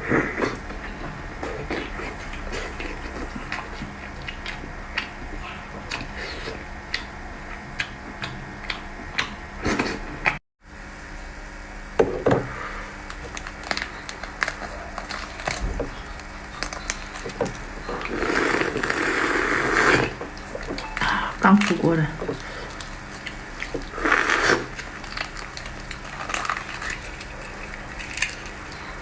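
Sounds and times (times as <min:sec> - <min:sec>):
chewing clicks and smacks: 0:01.4 - 0:10.4.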